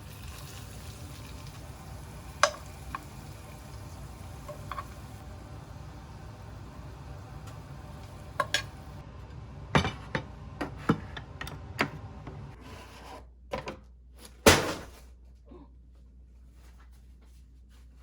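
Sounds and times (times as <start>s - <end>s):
steady low hum: 1.3s - 12.6s.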